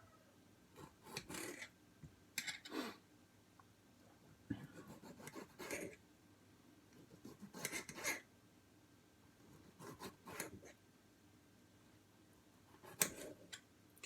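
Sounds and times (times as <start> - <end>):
knife cutting tomatoes on board: 12.8 - 13.4.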